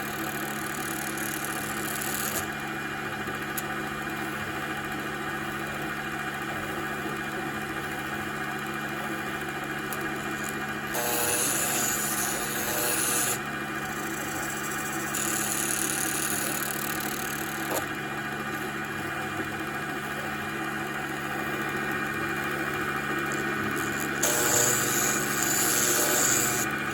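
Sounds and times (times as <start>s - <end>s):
cutting tool scraping wood: 0.0s - 2.5s, 10.0s - 18.8s, 23.0s - 26.9s
lathe machine hum: 0.0s - 3.6s, 9.0s - 26.9s.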